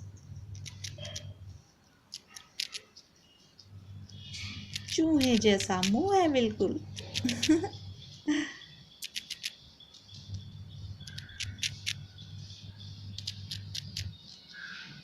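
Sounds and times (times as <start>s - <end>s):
squirrel gnawing a biscuit: 0.5s - 1.3s, 2.0s - 3.0s, 4.6s - 6.1s, 6.9s - 7.6s, 9.0s - 9.6s, 11.0s - 12.0s, 13.1s - 14.2s.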